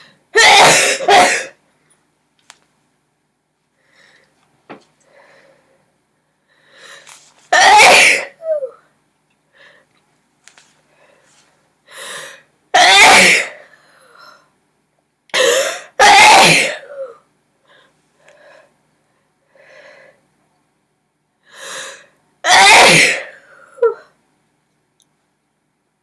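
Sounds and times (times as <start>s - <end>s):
woman sneezing: 0.4s - 1.5s, 7.5s - 8.7s, 15.4s - 17.2s, 22.5s - 23.4s.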